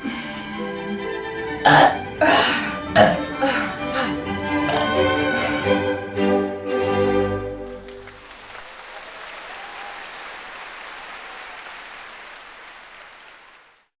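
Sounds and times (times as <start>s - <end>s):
violin music: 0.0s - 8.2s
crowd applause: 7.4s - 14.0s.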